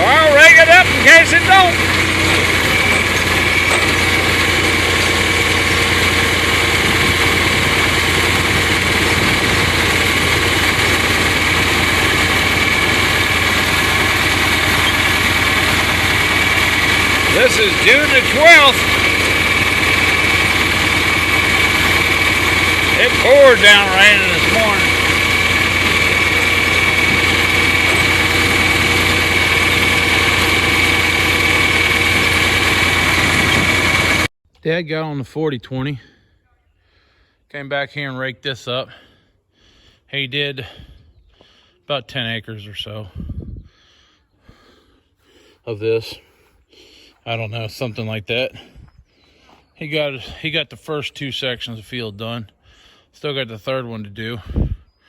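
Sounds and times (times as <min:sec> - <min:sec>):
tractor engine running: 0:00.0 - 0:34.3.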